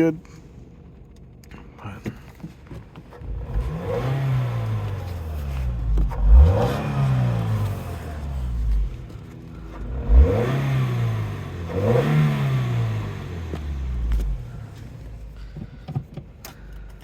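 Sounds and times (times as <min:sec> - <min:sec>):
car engine revving: 0:03.0 - 0:15.8.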